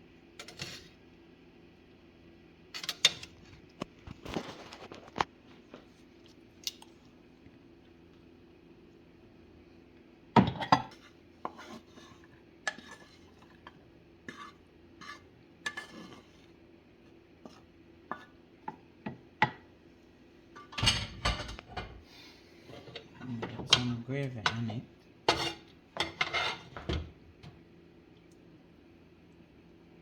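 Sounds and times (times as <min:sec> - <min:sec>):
cutlery clinking on pots and plates: 0:22.9 - 0:24.7, 0:25.3 - 0:27.0.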